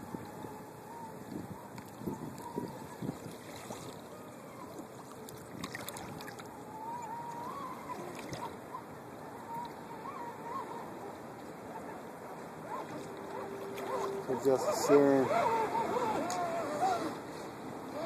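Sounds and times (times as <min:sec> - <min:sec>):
wind and water noise: 0:00.0 - 0:18.0
electric motor whining faintly: 0:12.6 - 0:18.0.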